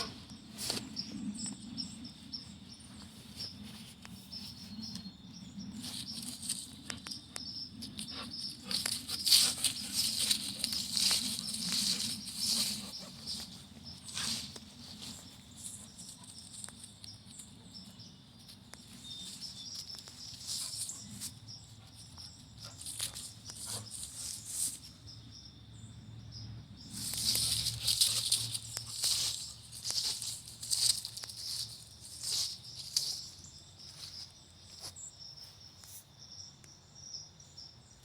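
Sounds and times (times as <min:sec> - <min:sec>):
dog scuffling and rustling: 0:08.1 - 0:16.7, 0:27.0 - 0:33.1.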